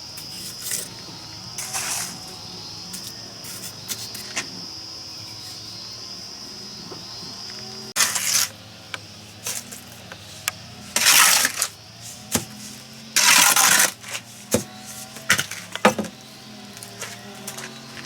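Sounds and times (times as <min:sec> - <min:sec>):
rough tool scrapes: 0:01.6 - 0:04.3, 0:08.0 - 0:08.6, 0:09.4 - 0:16.0.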